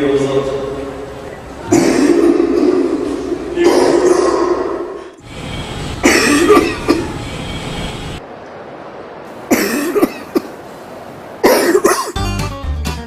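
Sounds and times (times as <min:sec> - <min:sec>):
harsh coughing over loudspeaker: 0:01.7 - 0:02.5, 0:03.6 - 0:05.1, 0:06.0 - 0:07.2, 0:09.5 - 0:10.5, 0:11.4 - 0:12.2.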